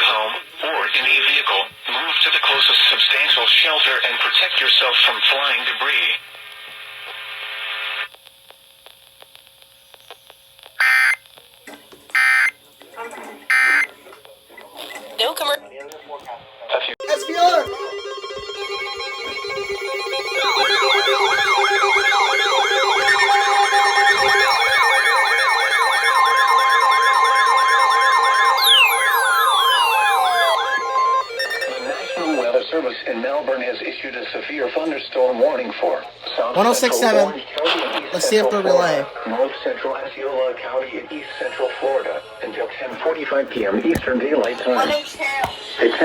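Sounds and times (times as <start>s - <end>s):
radio static crackling: 0.0s - 15.6s, 18.3s - 34.8s, 35.7s - 39.4s
electronic yelp siren: 10.8s - 11.2s, 12.2s - 12.5s, 13.5s - 13.9s, 17.0s - 33.0s
falling tone: 17.0s - 32.6s
shrill digital data burst: 17.0s - 33.0s.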